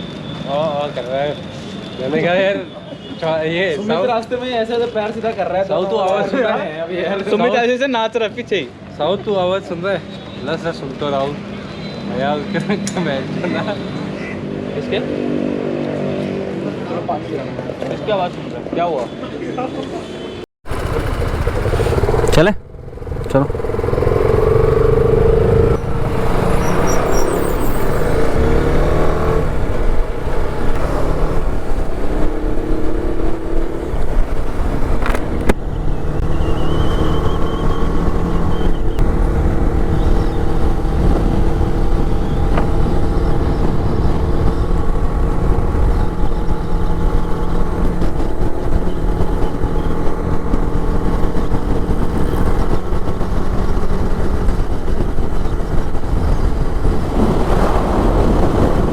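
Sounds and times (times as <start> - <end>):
motorcycle engine cruising: 20.6 - 58.9.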